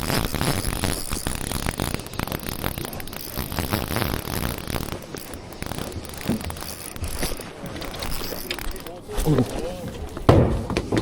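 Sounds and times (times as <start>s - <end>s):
fishing reel clicking: 0.0s - 9.2s.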